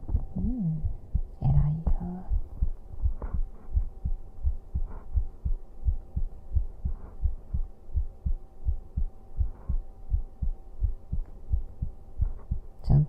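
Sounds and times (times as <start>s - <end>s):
heartbeat thumps: 0.0s - 13.0s.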